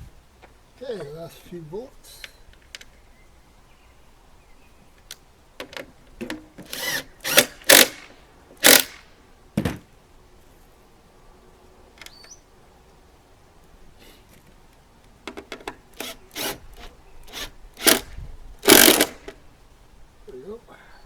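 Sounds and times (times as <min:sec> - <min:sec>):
power tool bursts on bolts: 0:06.6 - 0:09.1, 0:15.9 - 0:19.4.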